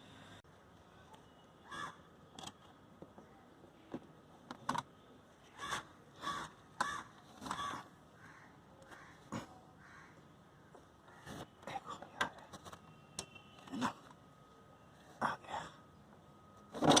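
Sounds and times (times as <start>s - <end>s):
crow cawing: 1.6s - 2.0s, 5.6s - 10.2s.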